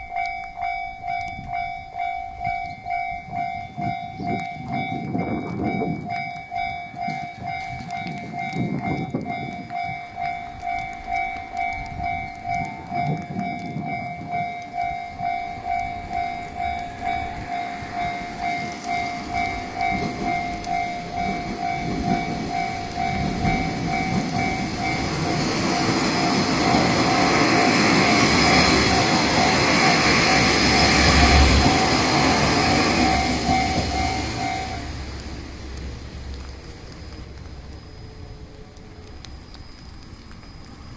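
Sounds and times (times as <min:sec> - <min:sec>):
level crossing bell ringing: 0:00.0 - 0:31.0
diesel railcar rumble: 0:00.0 - 0:40.9.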